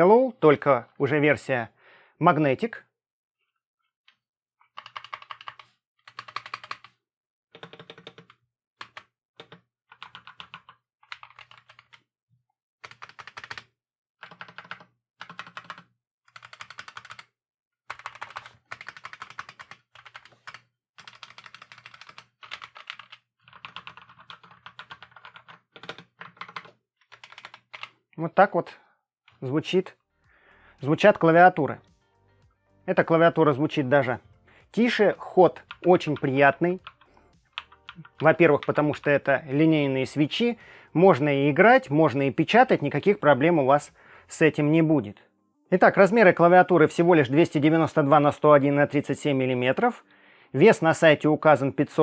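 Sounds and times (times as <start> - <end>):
mechanical keyboard typing: 4.7 - 7.0, 7.6 - 12.0, 12.8 - 17.3, 17.9 - 27.9, 35.6 - 39.1.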